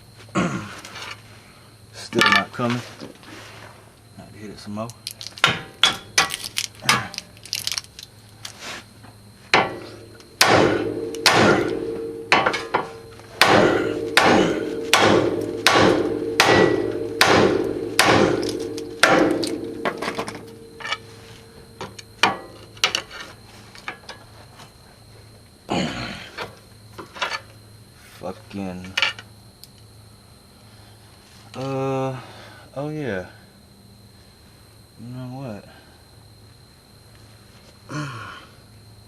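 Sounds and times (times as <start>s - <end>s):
hammer blows on metal ringing: 9.6s - 22.8s.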